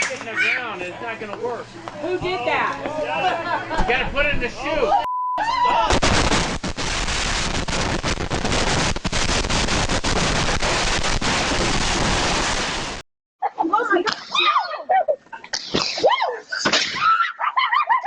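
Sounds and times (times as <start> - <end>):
firecrackers cracking: 5.9 - 13.0.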